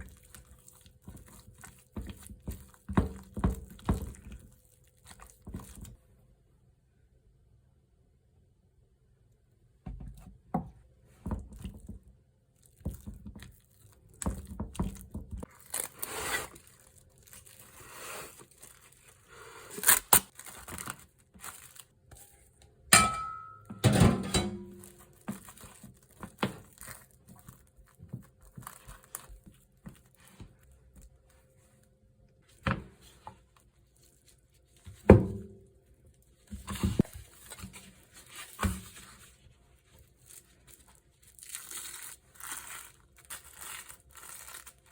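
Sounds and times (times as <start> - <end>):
wrapping crinkling and tearing: 0.0 - 2.9, 12.6 - 22.6, 24.8 - 31.9, 33.5 - 34.8, 36.0 - 44.9
knocks of dishes or utensils: 22.9 - 24.7.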